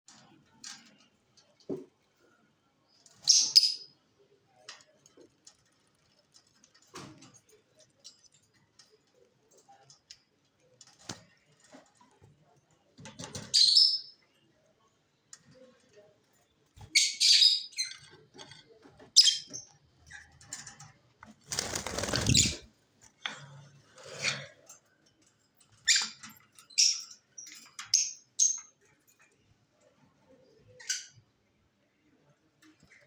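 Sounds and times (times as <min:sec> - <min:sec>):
small birds chirping: 0:21.6 - 0:22.7.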